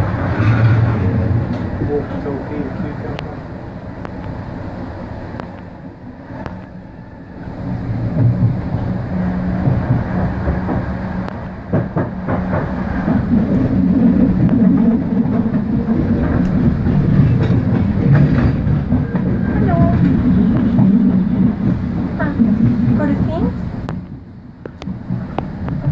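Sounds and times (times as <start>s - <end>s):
train rumbling on rails: 0.0s - 25.9s.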